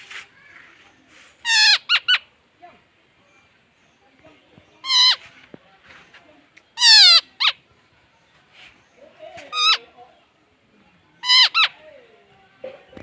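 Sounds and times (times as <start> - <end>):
baby bird squawking: 1.4 - 2.3, 4.8 - 5.2, 6.8 - 7.6, 9.5 - 9.9, 11.2 - 11.8.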